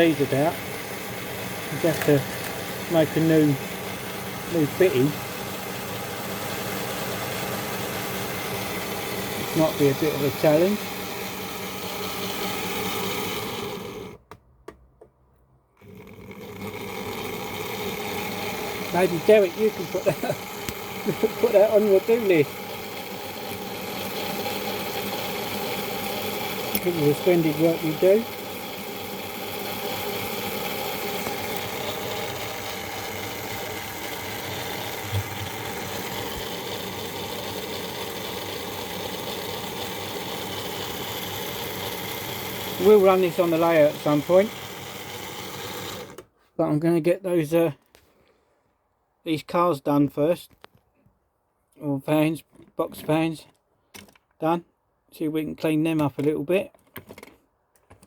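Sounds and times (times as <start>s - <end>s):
model train motor whirring: 0.0s - 14.2s, 15.8s - 46.3s
steady mechanical hum: 0.0s - 14.3s, 15.8s - 46.3s.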